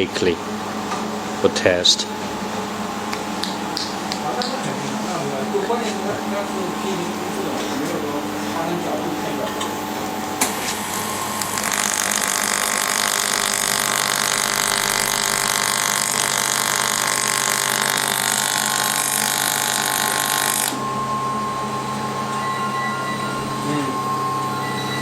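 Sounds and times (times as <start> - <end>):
low machine hum: 0.0 - 25.0
laser welder hiss with tones: 10.4 - 20.8.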